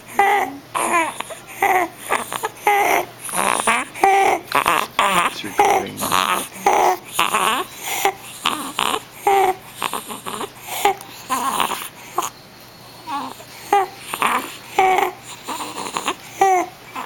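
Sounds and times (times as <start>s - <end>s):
child whimpering: 0.1s - 9.6s.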